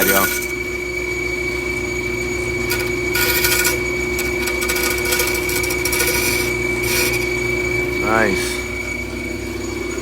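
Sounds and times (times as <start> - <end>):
wood rasping against blade: 0.0 - 0.6, 2.7 - 7.4
bandsaw hum with high whistle: 0.0 - 10.0.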